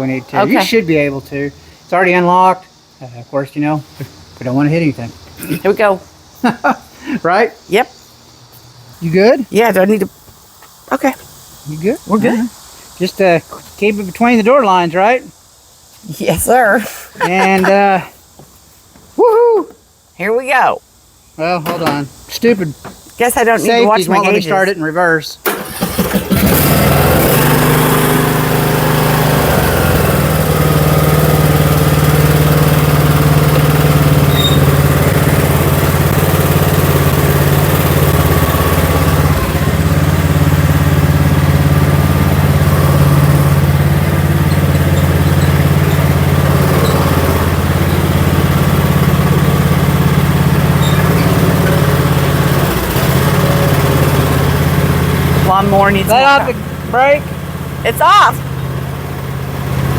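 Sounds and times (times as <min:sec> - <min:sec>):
riding lawn mower engine: 0:00.0 - 0:02.6, 0:16.5 - 0:18.8, 0:21.4 - 0:59.9.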